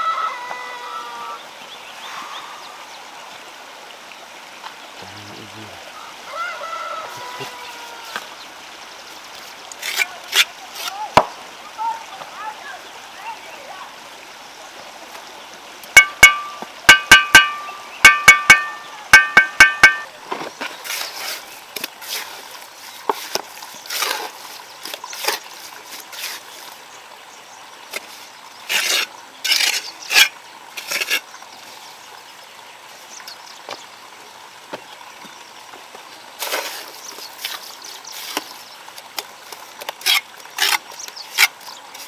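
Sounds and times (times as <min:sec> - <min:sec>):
irregular scraping strokes: 0:09.3 - 0:11.0, 0:18.5 - 0:26.8, 0:27.9 - 0:31.3, 0:36.4 - 0:42.0
metallic tool strikes: 0:15.9 - 0:20.1.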